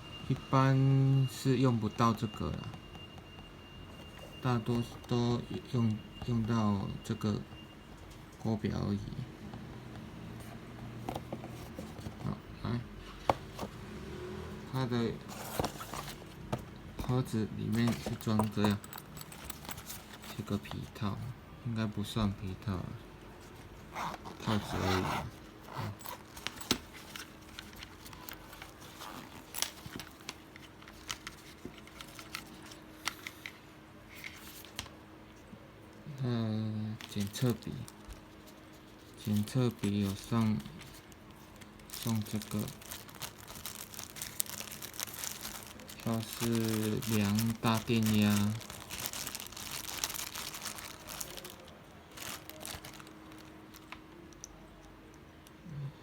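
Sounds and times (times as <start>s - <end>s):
faint steady hum: 0.0s - 56.0s
packaging rustling: 11.0s - 12.4s, 13.1s - 13.9s, 15.0s - 21.1s, 23.3s - 33.5s, 37.0s - 54.0s.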